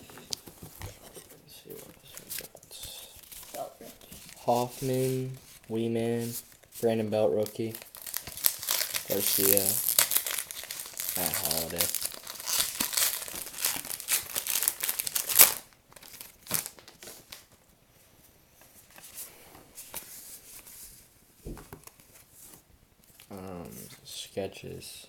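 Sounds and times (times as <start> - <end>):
wrapper crinkling and tearing: 7.4 - 17.4.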